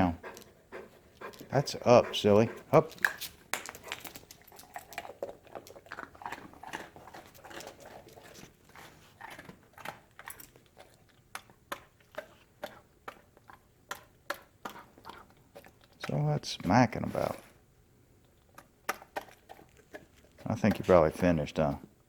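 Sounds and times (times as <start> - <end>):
dog crunching a treat: 2.2 - 16.3, 18.2 - 21.7.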